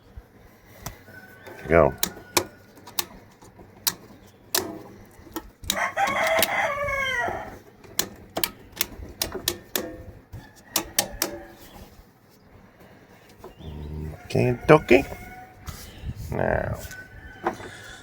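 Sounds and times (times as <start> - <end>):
rooster crowing: 1.0 - 2.8, 5.7 - 7.6, 10.3 - 11.8, 13.7 - 16.0, 16.7 - 18.0.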